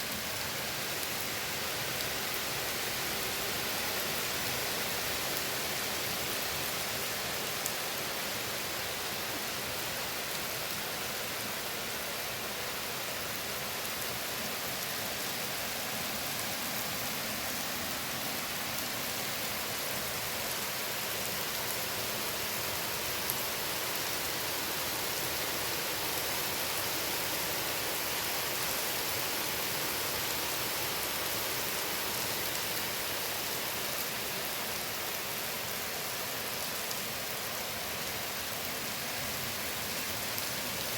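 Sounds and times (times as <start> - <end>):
rain on leaves: 0.0 - 40.9.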